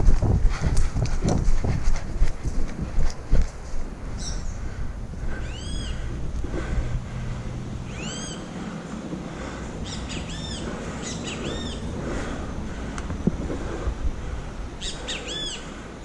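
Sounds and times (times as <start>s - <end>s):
low background rumble: 0.0s - 16.0s
bird calling: 4.2s - 13.2s, 14.8s - 15.9s.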